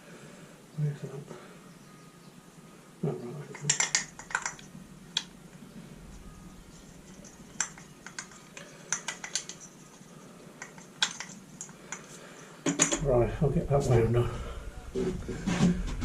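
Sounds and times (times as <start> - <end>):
small plastic and metal parts clicking: 3.5 - 5.3, 7.0 - 13.0.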